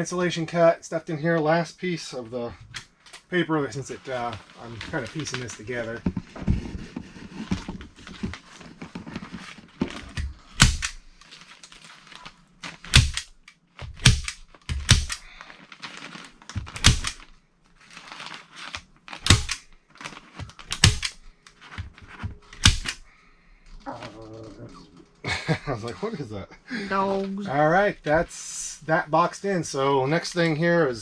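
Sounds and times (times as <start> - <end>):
paper rustling: 3.8 - 10.5, 11.2 - 12.9, 15.3 - 16.8, 17.8 - 20.7, 21.3 - 22.6
staple gun firing: 10.6 - 11.0, 12.9 - 13.3, 14.0 - 15.3, 16.8 - 17.2, 19.2 - 19.6, 20.7 - 21.2, 22.6 - 23.0.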